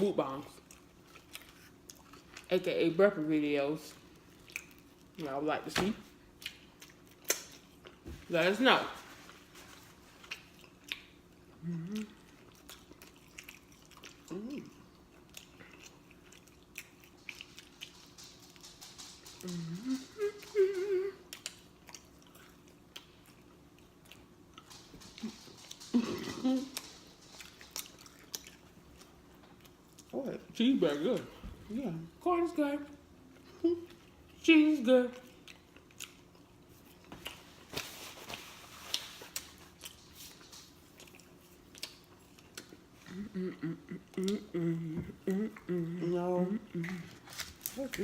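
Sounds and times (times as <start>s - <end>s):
wet chewing and lip smacks: 0.6s - 2.5s, 4.1s - 5.2s, 6.3s - 8.0s, 9.9s - 26.0s, 26.7s - 30.1s, 35.2s - 37.8s, 38.9s - 43.2s
person humming: 11.6s - 12.2s, 19.4s - 21.3s, 43.1s - 47.2s.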